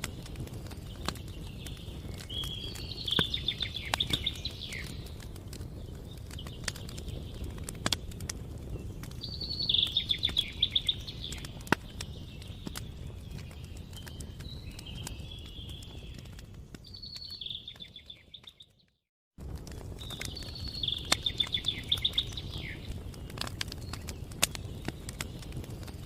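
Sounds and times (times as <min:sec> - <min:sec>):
campfire crackling and popping: 0:00.0 - 0:26.0
songbird trilling: 0:02.3 - 0:05.0, 0:09.3 - 0:11.6, 0:20.2 - 0:22.9.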